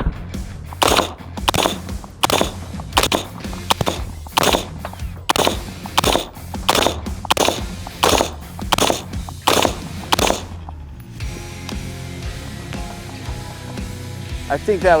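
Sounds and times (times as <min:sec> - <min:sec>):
background music: 0:00.0 - 0:15.0
rifle shots: 0:00.7 - 0:10.6.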